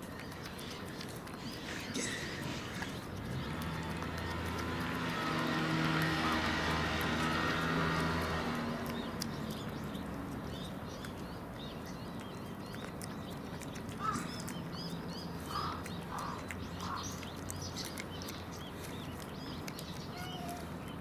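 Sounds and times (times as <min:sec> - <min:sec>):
small birds chirping: 0:00.0 - 0:21.0
lower bird calls: 0:00.2 - 0:04.1, 0:13.6 - 0:21.0.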